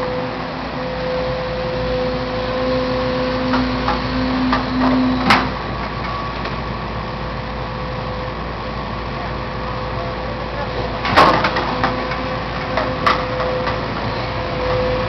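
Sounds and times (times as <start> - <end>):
demolition machinery rumbling and whining: 0.0 - 15.0.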